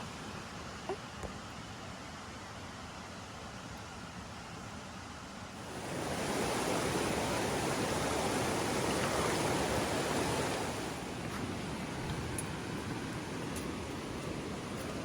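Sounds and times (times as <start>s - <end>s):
river rushing: 5.6s - 15.0s.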